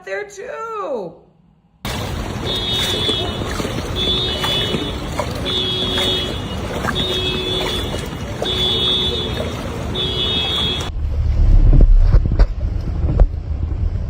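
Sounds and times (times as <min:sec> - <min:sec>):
wind rumble on microphone: 0:09.6 - 0:14.0.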